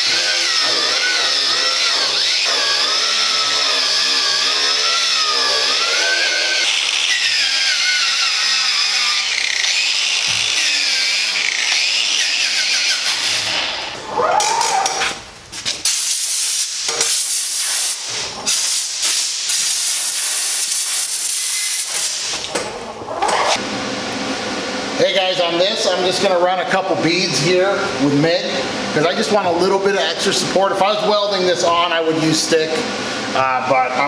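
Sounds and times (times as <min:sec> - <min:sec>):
grinder grinding steel: 0:00.0 - 0:23.6.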